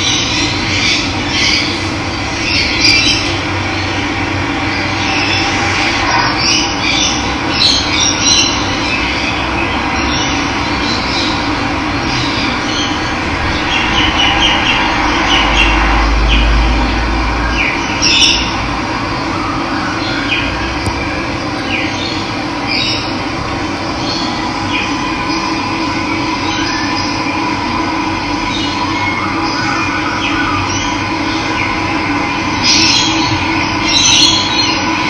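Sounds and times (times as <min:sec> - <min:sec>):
low rumble: 0:11.3 - 0:19.1, 0:20.9 - 0:28.2
birds chirping and calling: 0:21.6 - 0:25.8.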